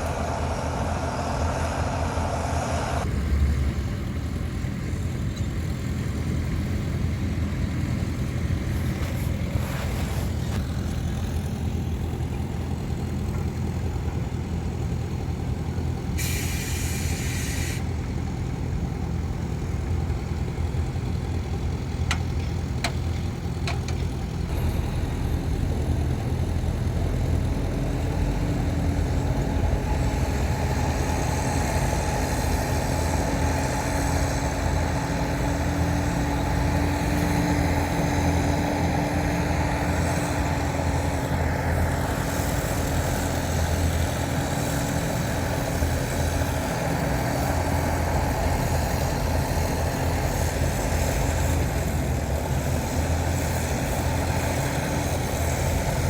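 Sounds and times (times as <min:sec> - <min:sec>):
diesel engines rumbling: 0:00.0 - 0:56.0
engine droning under load: 0:00.0 - 0:56.0
air brake hiss: 0:16.2 - 0:17.9.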